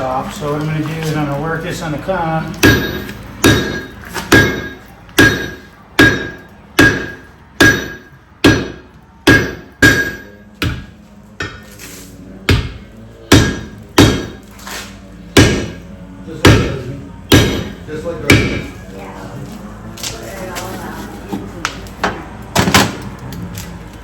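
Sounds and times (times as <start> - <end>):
hammer striking hot steel: 2.5 - 11.8, 12.4 - 14.5, 15.3 - 18.8.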